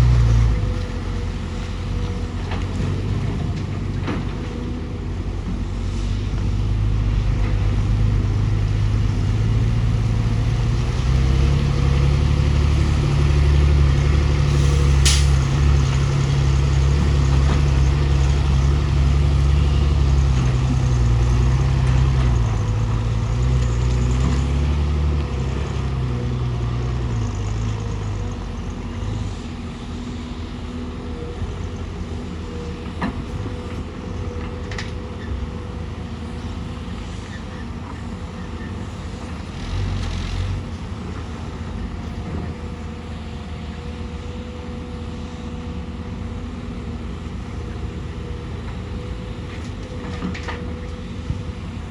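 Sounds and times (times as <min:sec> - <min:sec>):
excavator diesel engine running: 0:00.0 - 0:51.9.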